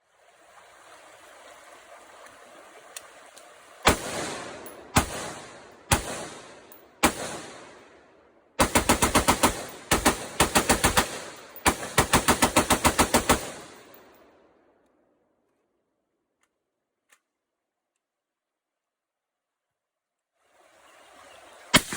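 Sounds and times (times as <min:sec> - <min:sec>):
rapid rifle fire: 0:03.9 - 0:07.9, 0:08.6 - 0:13.9
rifle gunshots with echo: 0:03.9 - 0:14.0.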